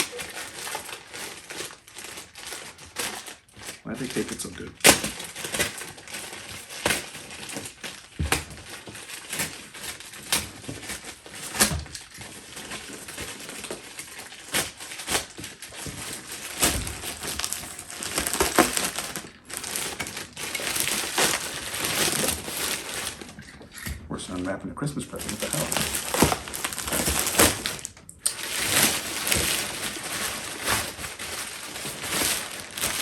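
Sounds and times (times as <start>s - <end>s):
cardboard box being torn open: 4.8s - 23.3s, 25.1s - 33.0s.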